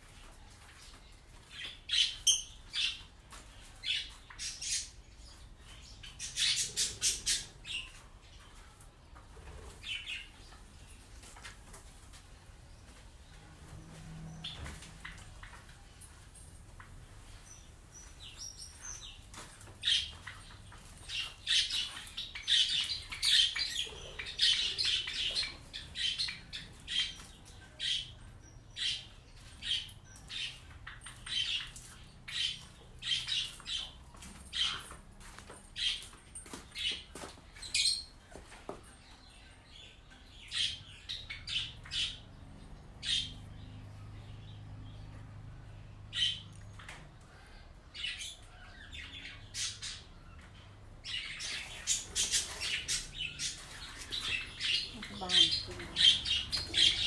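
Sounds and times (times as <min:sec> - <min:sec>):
bird chirping: 0:17.3 - 0:57.0.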